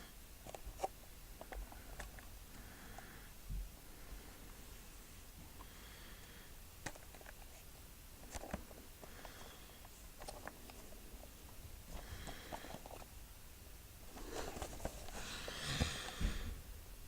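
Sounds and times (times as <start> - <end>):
soft plastic rustling: 6.8 - 13.2, 14.0 - 16.6.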